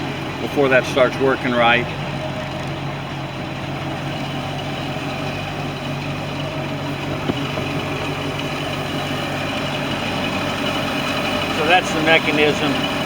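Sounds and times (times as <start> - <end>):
boat engine idling: 0.0 - 13.0.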